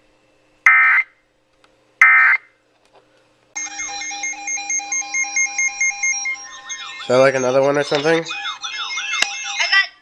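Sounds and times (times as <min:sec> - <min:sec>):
pulsing electronic alert tone: 0:03.6 - 0:09.6
screeching digital data bursts: 0:03.6 - 0:10.0.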